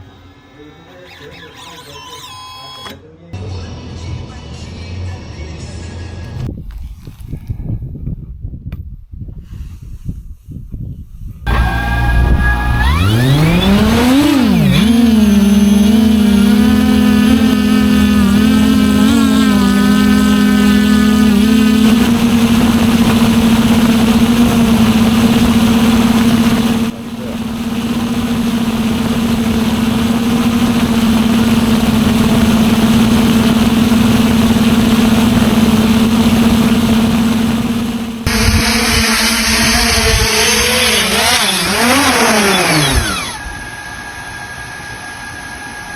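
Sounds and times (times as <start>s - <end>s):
drone motors whining: 11.5s - 45.9s.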